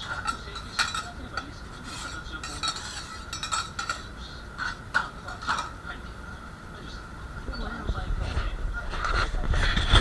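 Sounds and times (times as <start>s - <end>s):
metal spatulas scraping griddle: 0.0s - 5.8s
steady high hum: 0.0s - 10.0s.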